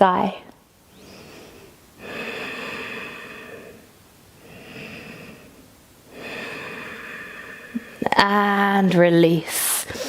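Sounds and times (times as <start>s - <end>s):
person breathing slowly: 0.9s - 8.1s.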